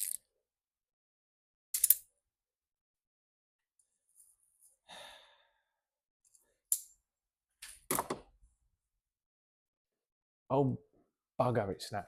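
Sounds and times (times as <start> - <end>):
person exhaling strained: 4.9 - 5.6.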